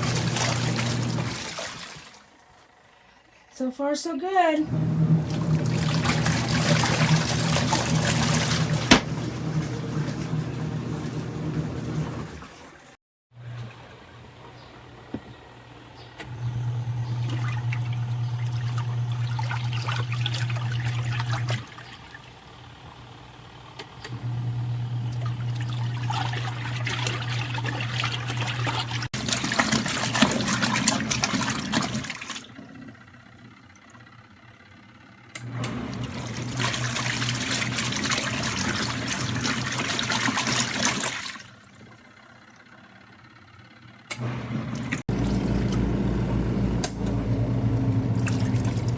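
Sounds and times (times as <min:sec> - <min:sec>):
water sloshing in tub: 0:00.0 - 0:02.9, 0:05.0 - 0:14.6, 0:16.4 - 0:23.2, 0:24.2 - 0:34.2, 0:35.6 - 0:42.9, 0:44.2 - 0:45.8, 0:48.2 - 0:48.9
washing machine motor running: 0:00.0 - 0:03.4, 0:04.5 - 0:48.9.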